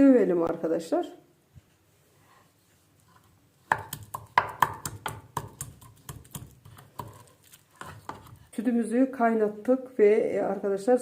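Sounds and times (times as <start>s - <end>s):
garlic being pounded: 3.6s - 8.5s.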